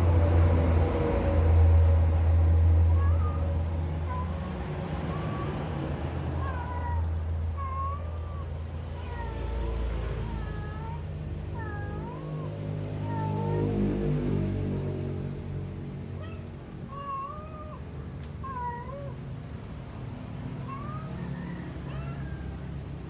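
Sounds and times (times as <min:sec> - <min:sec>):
cat chirping meows: 0:02.9 - 0:05.7, 0:06.4 - 0:13.8, 0:16.2 - 0:19.2, 0:20.6 - 0:22.6.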